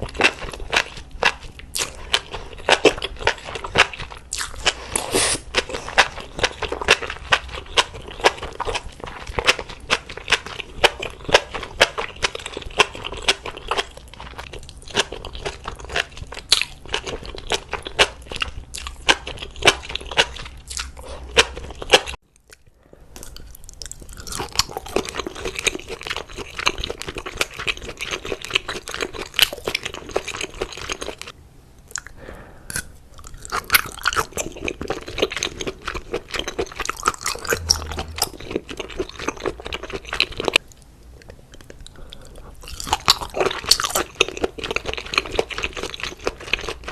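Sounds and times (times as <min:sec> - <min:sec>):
chewing and crunching food: 0:00.0 - 0:46.9.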